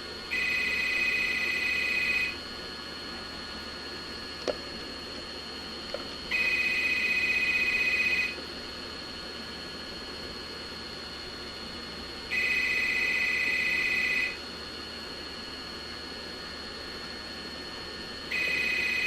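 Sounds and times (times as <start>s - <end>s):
faint high whine: 0.0s - 2.5s, 5.9s - 8.4s, 12.3s - 14.4s, 18.3s - 19.0s
telephone ringing: 0.3s - 2.4s, 6.3s - 8.4s, 12.3s - 14.4s, 18.3s - 19.0s.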